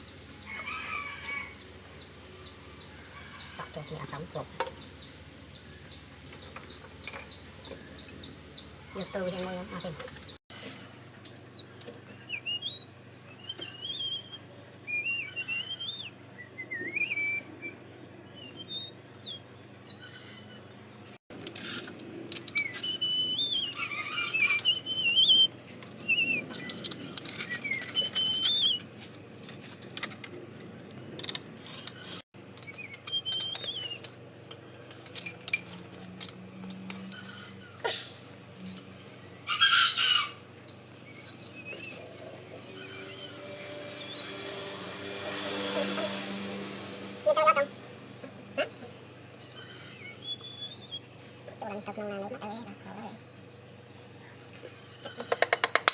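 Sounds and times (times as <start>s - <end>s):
small birds chirping: 0.0s - 55.8s
sharp clicks and knocks: 55.2s - 55.9s.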